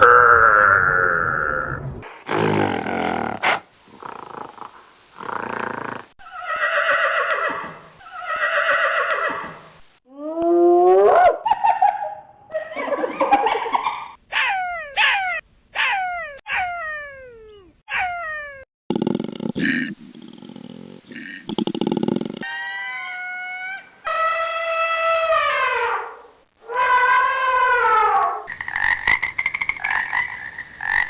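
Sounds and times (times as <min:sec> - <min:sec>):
animal calls: 0:22.4 - 0:26.1.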